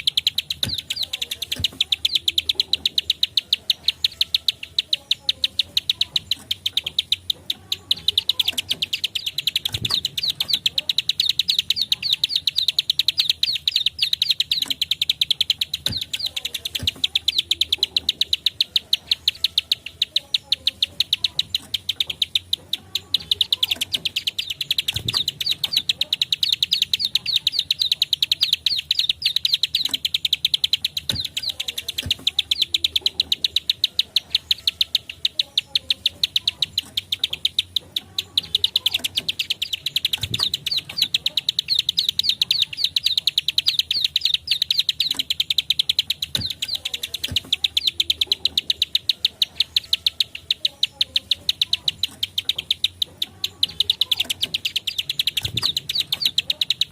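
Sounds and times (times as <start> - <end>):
bird song of sharp clicks: 0.0 - 56.9.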